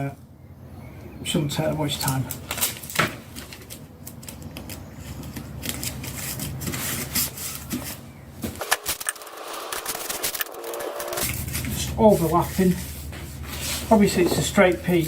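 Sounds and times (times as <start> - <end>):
small clicks crackles and rubbing: 2.0 - 6.6.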